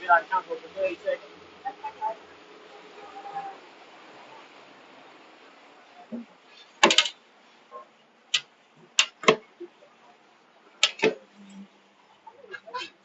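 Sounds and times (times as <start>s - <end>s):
sharp knocks and clicks: 6.1s - 7.2s, 8.3s - 9.4s, 10.8s - 11.2s.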